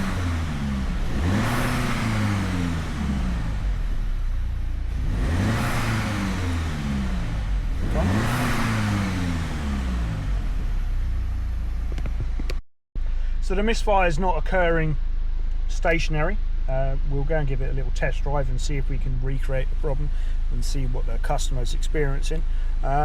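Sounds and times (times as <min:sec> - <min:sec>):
car engine revving: 0:00.0 - 0:12.6.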